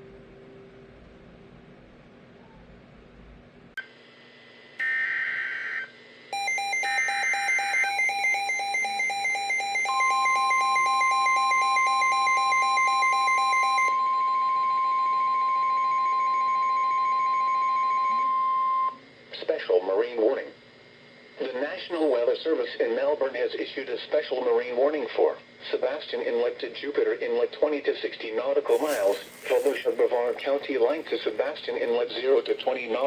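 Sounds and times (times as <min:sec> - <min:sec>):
rapid pulsing beep: 0:06.4 - 0:18.1.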